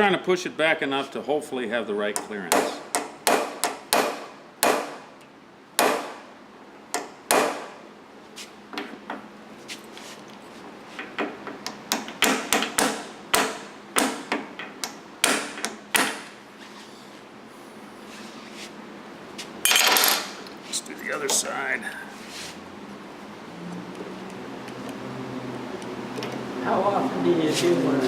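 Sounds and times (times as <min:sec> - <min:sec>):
hammer striking metal punch: 0:02.2 - 0:05.1, 0:05.8 - 0:06.2, 0:07.0 - 0:07.8, 0:11.9 - 0:14.5, 0:15.2 - 0:16.3.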